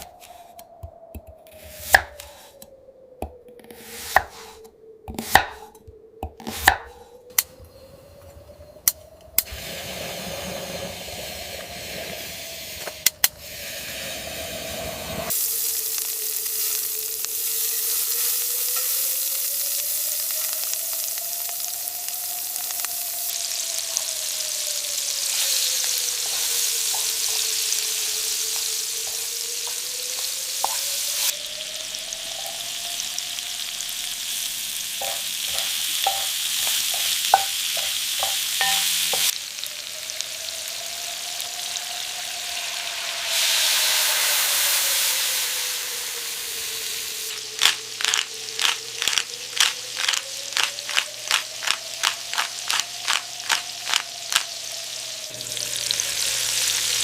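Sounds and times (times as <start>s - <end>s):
knife chopping on a board: 5.1s - 5.7s
food sizzling in a pan: 9.5s - 57.0s
faint tone rising and falling: 38.2s - 47.4s.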